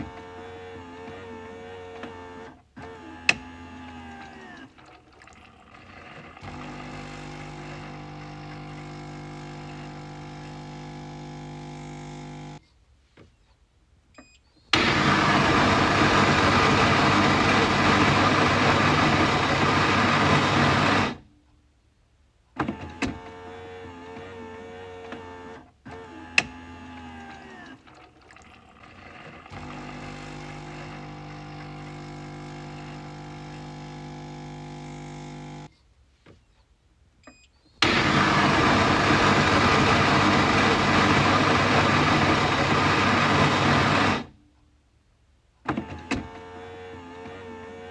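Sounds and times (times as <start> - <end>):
coffee machine motor running: 5.5 - 12.6, 14.8 - 21.2, 27.9 - 35.7, 37.8 - 44.3.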